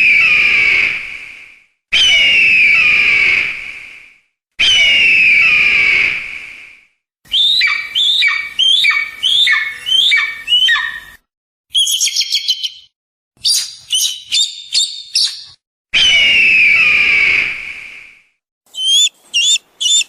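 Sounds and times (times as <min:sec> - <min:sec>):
kite shrill whistled calls: 0:02.0 - 0:03.5, 0:04.6 - 0:06.3, 0:07.3 - 0:12.8, 0:13.4 - 0:17.9, 0:18.7 - 0:20.0.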